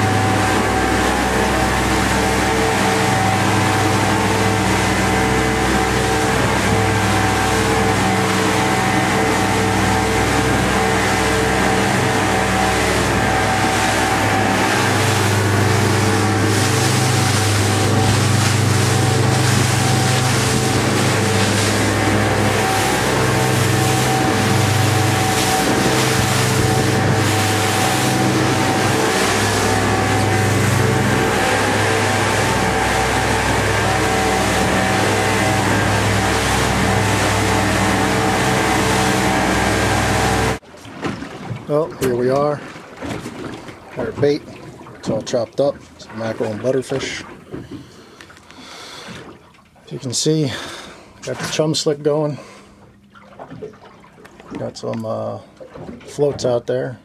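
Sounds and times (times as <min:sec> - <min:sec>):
boat engine running: 0:00.0 - 0:57.0
wind and water rushing: 0:00.0 - 0:57.0.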